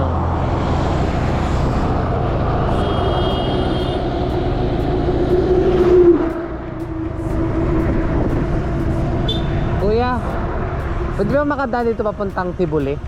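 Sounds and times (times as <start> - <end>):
wind rushing over microphone: 0.0 - 13.0
motorcycle engine running: 2.6 - 13.0.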